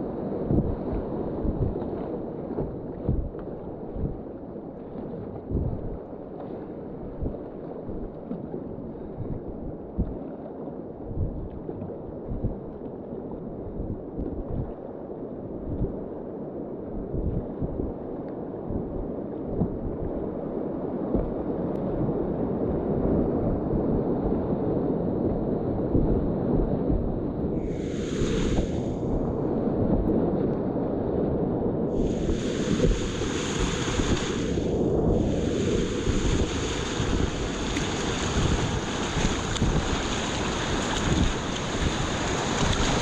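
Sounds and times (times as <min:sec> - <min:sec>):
whitewater rushing: 0:27.7 - 0:28.9, 0:32.1 - 0:43.0.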